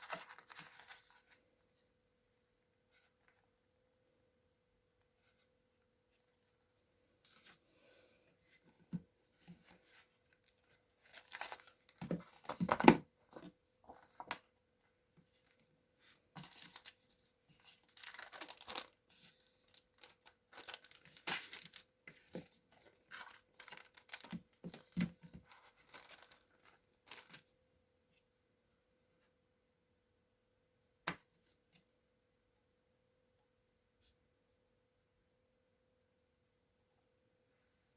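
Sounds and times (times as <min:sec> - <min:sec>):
packaging rustling and tearing: 0:00.0 - 0:01.3, 0:11.0 - 0:13.0, 0:17.6 - 0:27.4.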